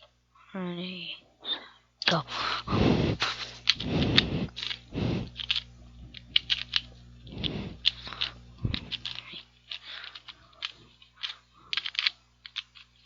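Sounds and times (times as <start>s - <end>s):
plastic puzzle cube clicking: 3.6s - 13.0s.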